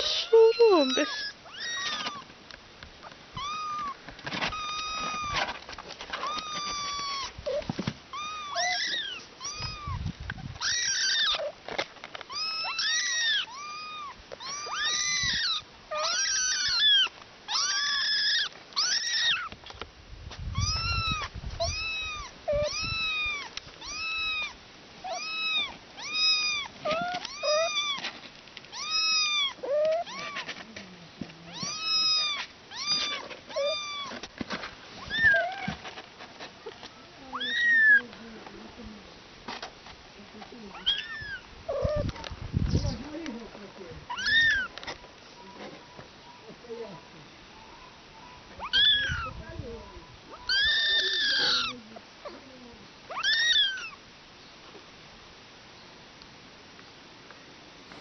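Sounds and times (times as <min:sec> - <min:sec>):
cat meowing: 0:00.0 - 0:02.2, 0:03.4 - 0:05.5, 0:06.2 - 0:10.0, 0:10.6 - 0:11.5, 0:12.3 - 0:19.6, 0:20.5 - 0:28.1, 0:28.7 - 0:30.5, 0:31.5 - 0:34.2, 0:35.0 - 0:35.8, 0:37.3 - 0:38.1, 0:40.7 - 0:42.3, 0:44.1 - 0:44.7, 0:48.6 - 0:49.4, 0:50.3 - 0:52.4, 0:53.1 - 0:54.0.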